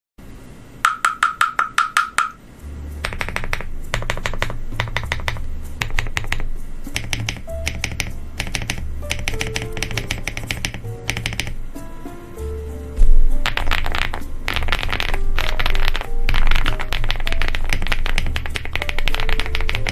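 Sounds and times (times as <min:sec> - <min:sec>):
background music with bass line: 0:02.6 - 0:19.9
mechanical keyboard typing: 0:03.0 - 0:11.6, 0:13.4 - 0:19.9.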